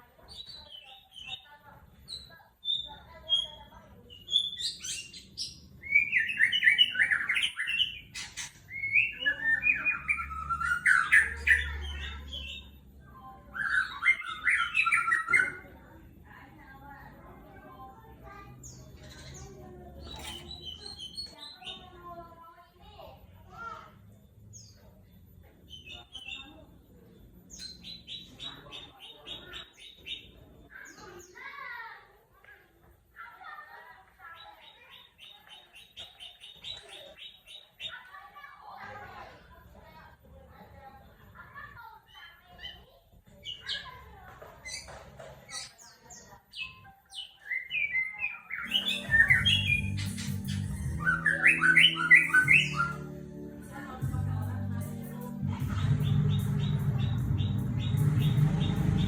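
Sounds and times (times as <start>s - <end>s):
bird chirping song: 0.2s - 15.9s, 18.5s - 22.1s, 24.1s - 31.4s, 34.2s - 38.1s, 44.6s - 53.5s, 55.1s - 59.0s
bird singing whistles and chirps: 4.1s - 12.7s, 13.5s - 15.6s, 47.2s - 53.0s.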